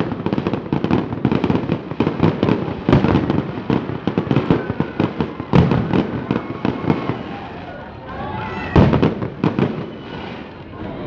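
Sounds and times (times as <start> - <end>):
fireworks bangs and crackling: 0.0 - 11.0
heavy firework blast: 0.0 - 11.0.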